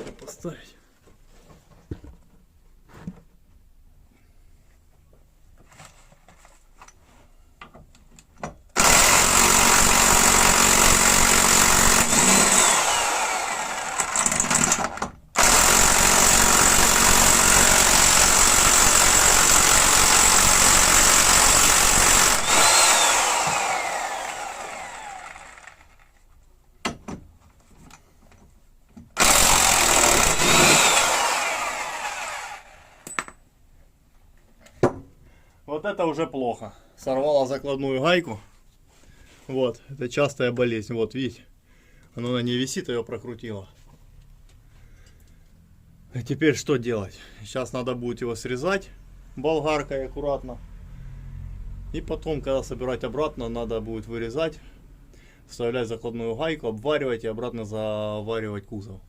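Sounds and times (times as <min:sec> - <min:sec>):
impact wrench running: 0:08.8 - 0:26.1, 0:29.2 - 0:33.2
motor whine spinning down: 0:22.4 - 0:25.8.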